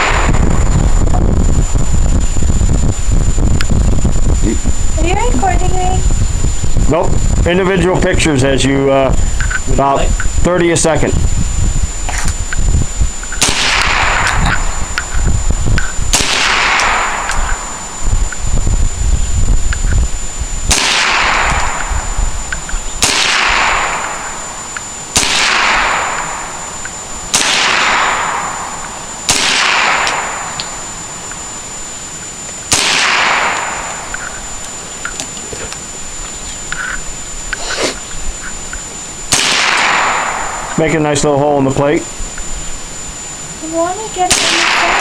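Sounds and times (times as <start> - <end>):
rifle shots echoing: 0.0 - 0.5, 13.4 - 14.8, 16.1 - 17.8, 20.7 - 21.9, 23.0 - 31.0, 32.7 - 34.1, 39.3 - 40.8, 44.3 - 45.0.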